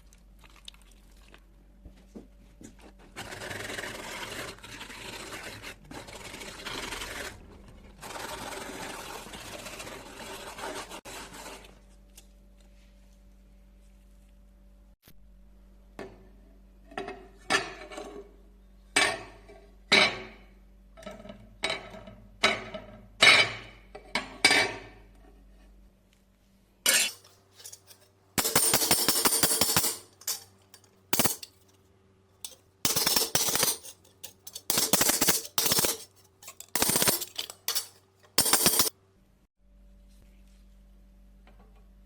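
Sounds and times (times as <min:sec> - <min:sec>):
abrasive grinding on steel: 0:26.9 - 0:28.5.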